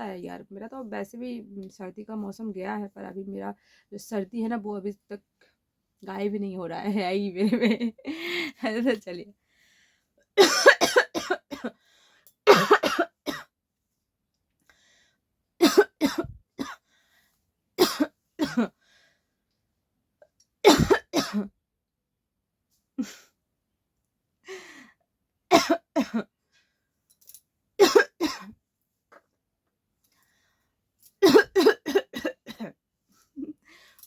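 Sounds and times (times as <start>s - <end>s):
person coughing: 10.4s - 11.8s, 12.5s - 13.5s, 15.6s - 16.8s, 17.8s - 18.7s, 20.7s - 21.5s, 25.5s - 26.3s, 27.8s - 28.6s, 31.2s - 32.8s.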